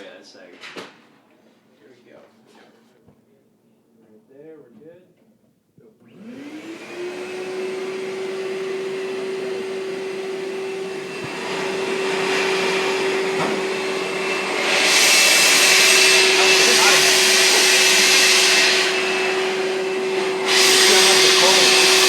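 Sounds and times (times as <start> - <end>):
vacuum motor whine: 6.0 - 22.0.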